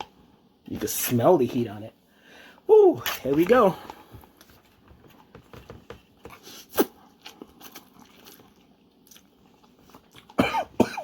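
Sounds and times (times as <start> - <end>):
chewing and smacking: 4.4 - 10.4.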